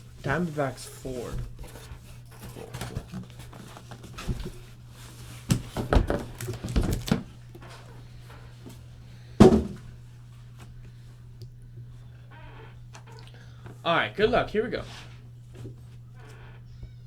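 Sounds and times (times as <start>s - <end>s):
low electrical hum: 0.0s - 17.0s
loud thunk: 9.4s - 9.9s
objects knocking on a tabletop: 9.4s - 9.9s.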